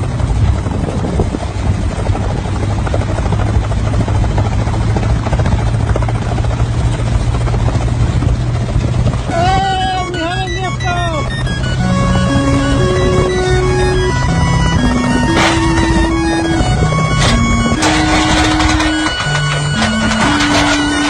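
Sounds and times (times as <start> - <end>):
gyroplane engine and rotor: 0.0 - 21.0
music: 10.0 - 21.0.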